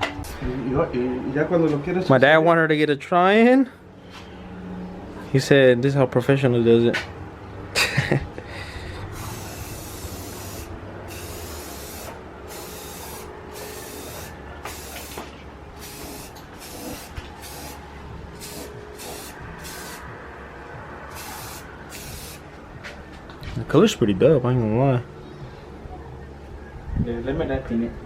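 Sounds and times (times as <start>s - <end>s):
spray-paint can hissing: 9.1s - 17.8s, 18.4s - 20.1s, 21.1s - 22.4s.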